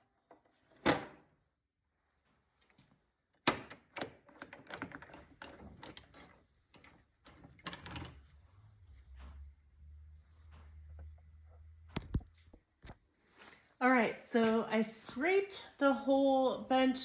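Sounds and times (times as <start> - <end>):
low hum: 7.2 - 13.8
sharp clicks and knocks: 10.8 - 13.0.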